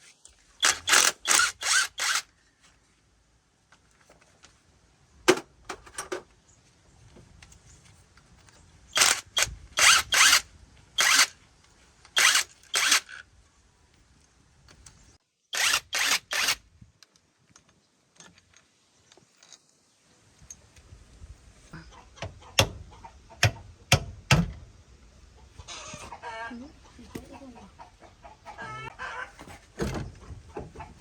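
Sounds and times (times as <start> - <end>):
short sharp mechanical tool bursts: 0.6 - 2.3, 9.0 - 10.4, 11.0 - 11.3, 12.2 - 13.2, 15.5 - 16.6.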